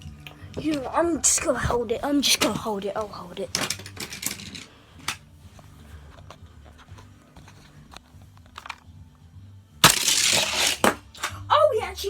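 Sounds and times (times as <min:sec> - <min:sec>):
plastic toy track clicking: 0:03.6 - 0:05.2, 0:09.9 - 0:10.9.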